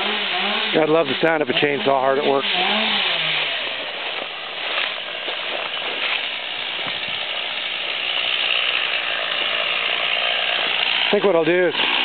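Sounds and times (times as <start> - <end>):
chainsaw cutting wood: 0.0 - 12.0
wood snapping and crackling: 2.4 - 12.0.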